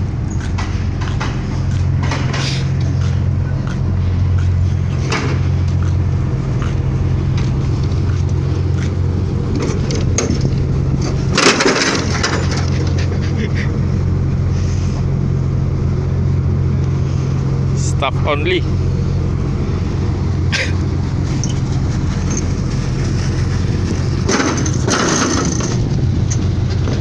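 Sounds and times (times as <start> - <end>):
ship machinery drone: 0.0 - 27.0
clattering scrape: 0.6 - 2.8, 21.3 - 25.9.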